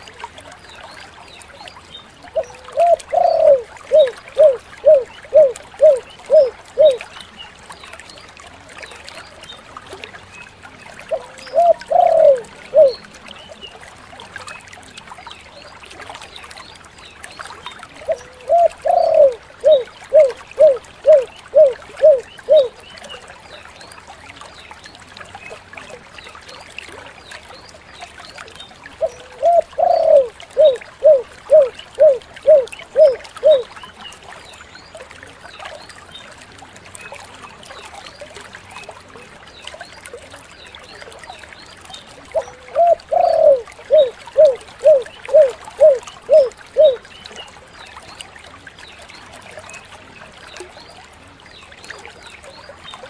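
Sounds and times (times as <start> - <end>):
dove cooing: 2.4 - 7.0, 11.1 - 13.0, 18.0 - 22.7, 29.0 - 33.7, 42.3 - 47.0.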